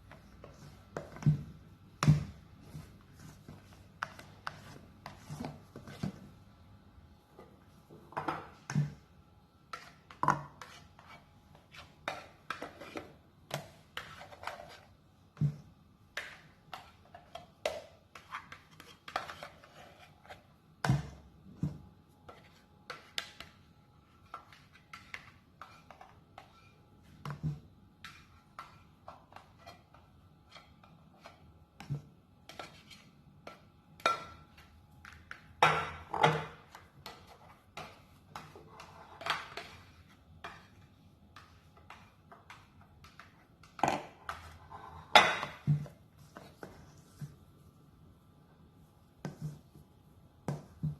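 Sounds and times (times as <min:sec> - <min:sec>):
spatula scraping mixing bowl: 0:09.7 - 0:21.6, 0:22.2 - 0:47.5.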